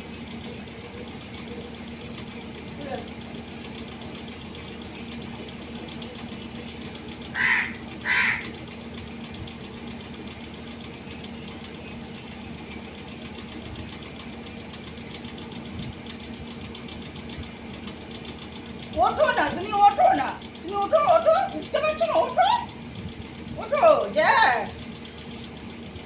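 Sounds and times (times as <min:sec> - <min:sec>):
steady low hum: 0:00.0 - 0:26.0
harsh animal calls: 0:07.3 - 0:08.6.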